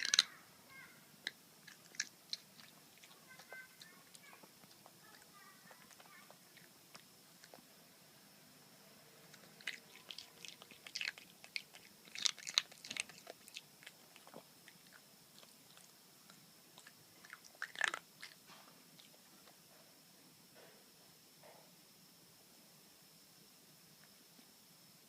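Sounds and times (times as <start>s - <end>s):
puppy chewing and biting: 0.0s - 0.3s, 1.2s - 7.8s, 9.2s - 19.6s.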